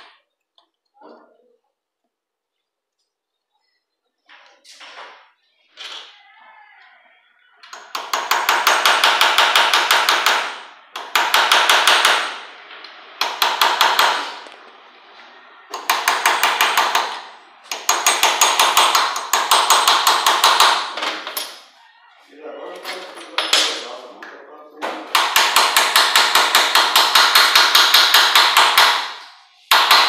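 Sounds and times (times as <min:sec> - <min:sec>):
hammer tapping metal: 0:07.7 - 0:12.4, 0:13.2 - 0:14.4, 0:15.7 - 0:21.6, 0:25.0 - 0:30.0.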